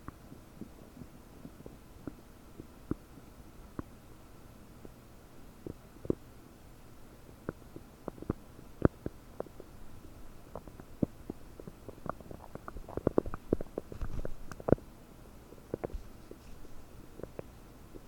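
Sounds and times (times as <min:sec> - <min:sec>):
stomach gurgling: 0:05.6 - 0:06.3, 0:07.4 - 0:09.8, 0:10.5 - 0:14.8, 0:15.6 - 0:18.0.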